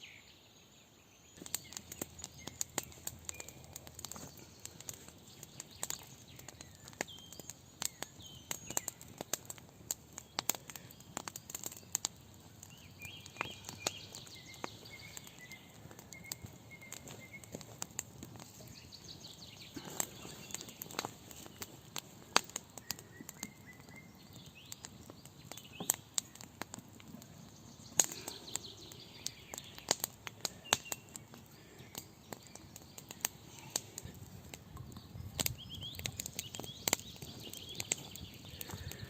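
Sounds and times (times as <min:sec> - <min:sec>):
birds chirping: 0:00.0 - 0:39.0
sharp clicks and snaps: 0:27.9 - 0:34.1, 0:34.8 - 0:39.0.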